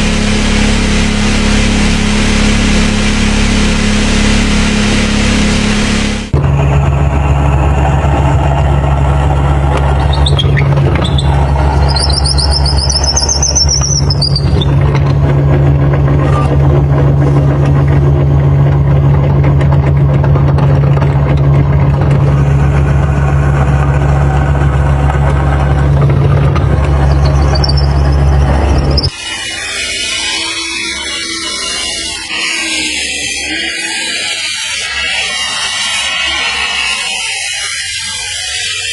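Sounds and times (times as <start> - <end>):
high wavering squeal: 6.6 - 16.6, 22.6 - 38.9.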